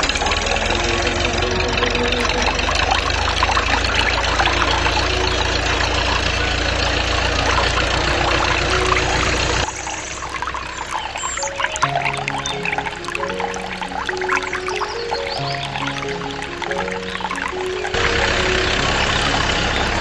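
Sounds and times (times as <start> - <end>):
small engine running: 0.0 - 10.9, 17.9 - 20.0.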